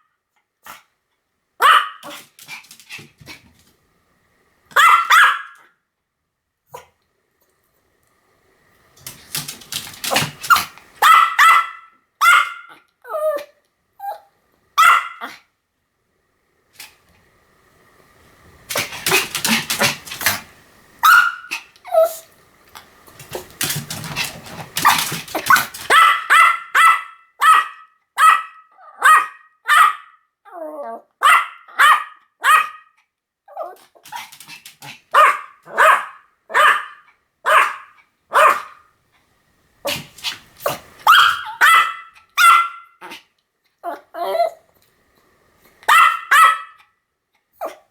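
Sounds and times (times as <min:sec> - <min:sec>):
small dog yapping: 0:01.6 - 0:03.4, 0:04.7 - 0:05.7, 0:09.1 - 0:14.2, 0:14.8 - 0:15.4, 0:21.0 - 0:22.3, 0:23.2 - 0:38.8, 0:39.9 - 0:43.2, 0:45.9 - 0:46.8.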